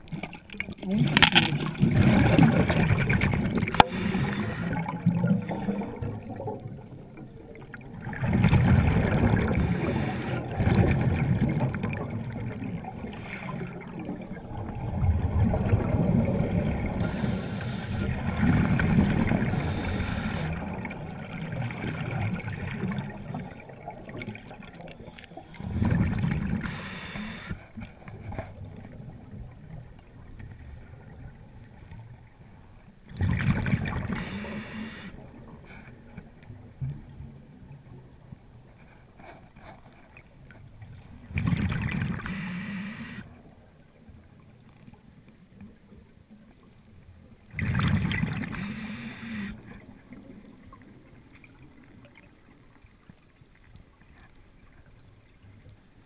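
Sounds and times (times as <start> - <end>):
water gurgling underwater: 0.0 - 32.3, 33.0 - 35.6, 40.8 - 43.6, 47.5 - 52.6.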